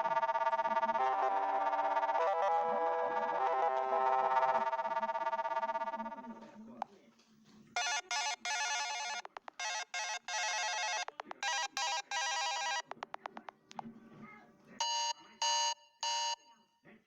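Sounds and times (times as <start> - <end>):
electronic phone ringtone: 0.0 - 6.2, 7.8 - 13.2
rapid clicks: 7.8 - 13.8.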